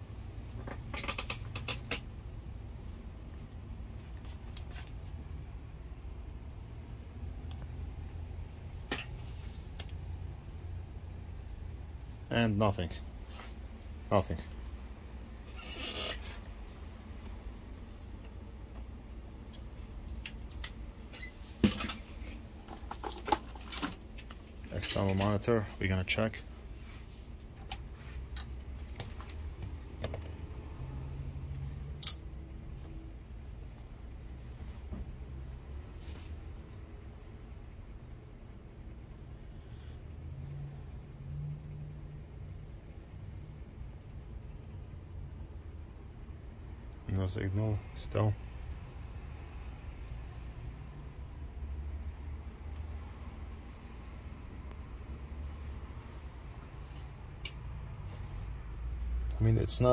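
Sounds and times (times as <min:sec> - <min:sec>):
low steady hum: 0:00.0 - 0:59.9
hands handling laptop and cables: 0:21.6 - 0:25.3.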